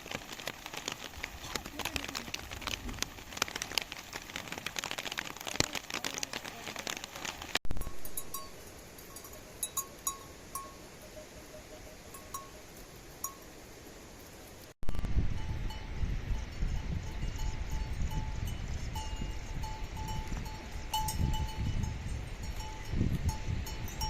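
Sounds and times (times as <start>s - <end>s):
rain pattering: 0.0s - 10.6s
faint bell-like tinkles: 7.8s - 13.6s, 15.0s - 24.0s.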